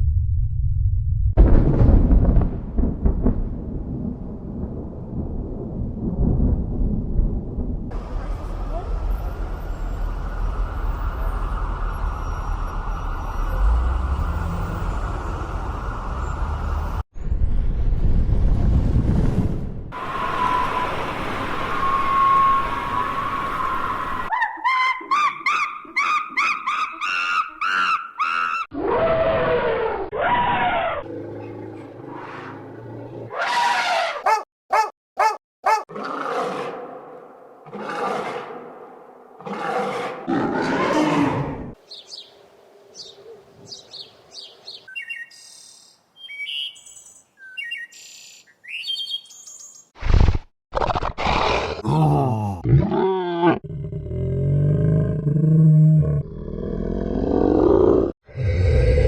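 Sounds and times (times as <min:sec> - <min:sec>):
engine and traffic rumble: 0:07.9 - 0:24.3
animal roars: 0:28.8 - 0:34.2, 0:35.9 - 0:41.8, 0:50.0 - 0:59.0.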